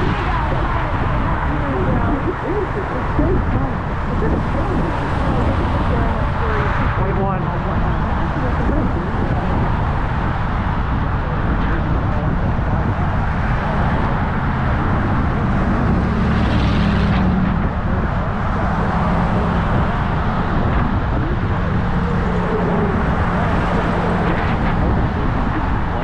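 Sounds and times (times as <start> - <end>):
road traffic noise: 0.0 - 26.0
vehicle passing close by: 8.0 - 26.0.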